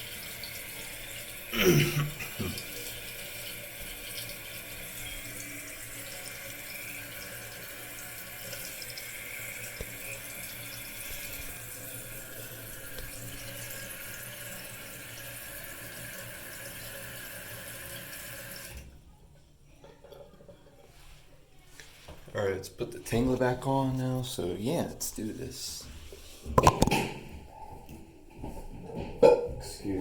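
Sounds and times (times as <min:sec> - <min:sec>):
toilet tank refilling: 0:00.0 - 0:19.0.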